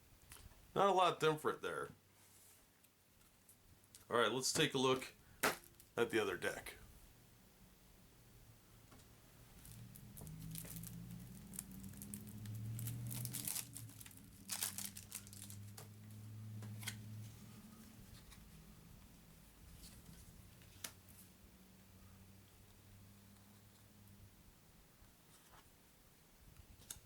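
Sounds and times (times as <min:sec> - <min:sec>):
packaging tearing and crinkling: 0:09.6 - 0:15.8.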